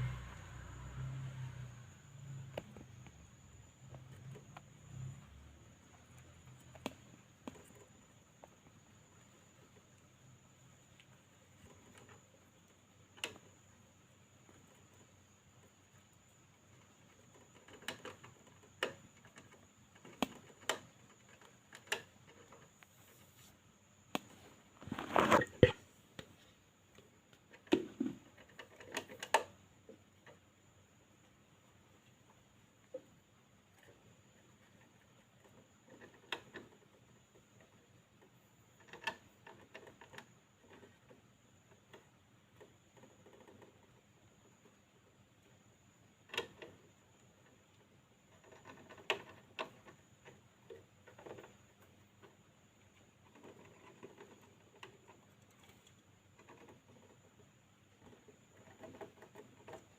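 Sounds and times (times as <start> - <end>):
hamster clicks: 2.4 - 5.2, 5.8 - 9.7, 13.1 - 13.6, 16.7 - 22.7, 26.9 - 30.4, 33.8 - 44.8, 46.2 - 47.7
scratchy rustling: 24.8 - 25.7.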